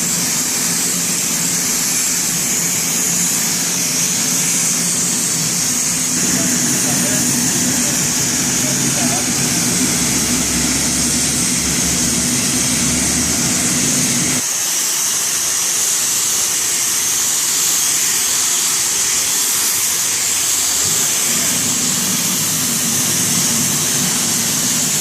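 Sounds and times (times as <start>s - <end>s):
pressure washer jet hissing: 0.0s - 25.0s
machine low hum: 2.6s - 14.4s, 20.8s - 25.0s.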